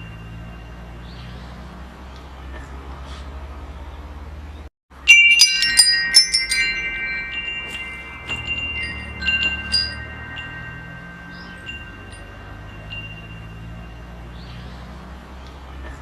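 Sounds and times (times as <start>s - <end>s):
wind chimes ringing: 0.0s - 1.8s, 4.9s - 15.3s.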